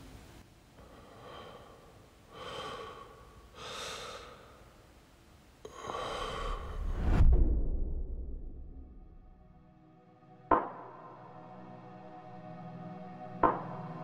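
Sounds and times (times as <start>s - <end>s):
person breathing heavily: 0.8s - 4.8s, 5.6s - 7.2s.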